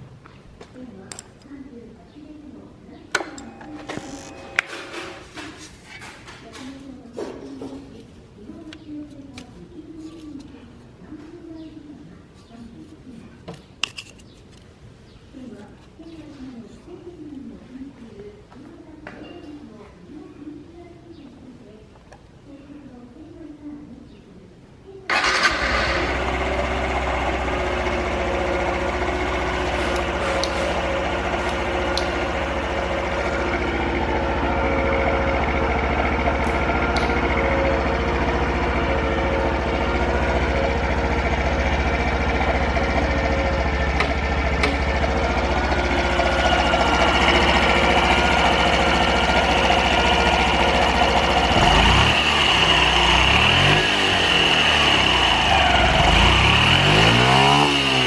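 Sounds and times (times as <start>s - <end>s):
motorcycle engine starting and idling: 3.1s - 6.8s, 25.1s - 58.0s.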